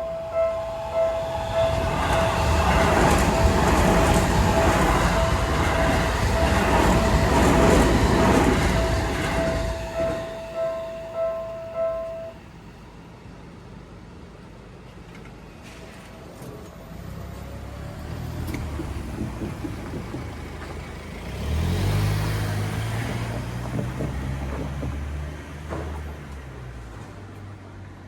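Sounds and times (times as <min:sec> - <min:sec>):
vehicle engines passing: 0:17.0 - 0:27.5.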